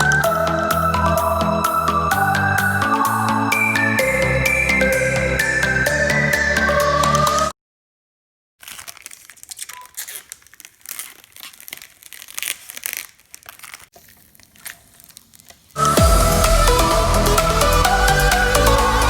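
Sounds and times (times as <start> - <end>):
packaging crinkling and tearing: 8.6 - 16.0.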